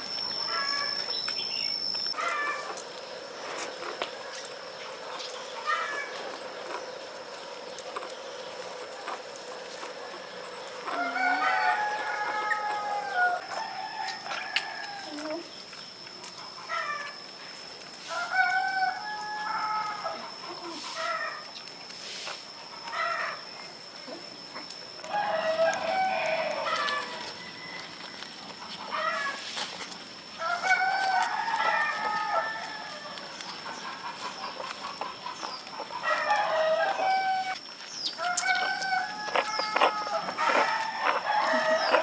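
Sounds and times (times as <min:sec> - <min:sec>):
rooster crowing: 0:10.2 - 0:15.4, 0:18.0 - 0:20.4, 0:25.0 - 0:29.4, 0:30.4 - 0:33.9, 0:35.8 - 0:37.6, 0:38.2 - 0:42.0.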